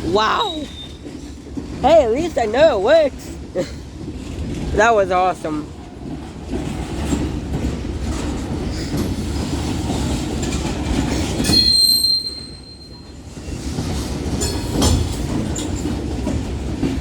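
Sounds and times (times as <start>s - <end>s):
freight train rumbling past: 0.0s - 17.0s
wheels clacking: 0.0s - 17.0s
high wheel squeal: 0.2s - 1.0s, 11.4s - 13.6s.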